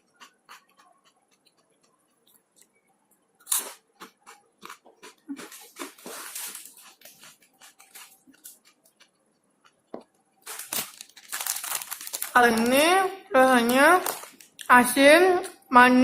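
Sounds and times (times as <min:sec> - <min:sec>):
rice cracker crunching: 0:03.4 - 0:09.8, 0:10.4 - 0:12.9, 0:13.7 - 0:14.7.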